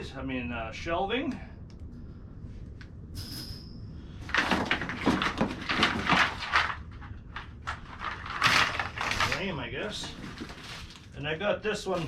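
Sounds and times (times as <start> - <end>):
parts clattering: 3.2 - 12.0
packaging rustling and scraping: 4.2 - 11.2.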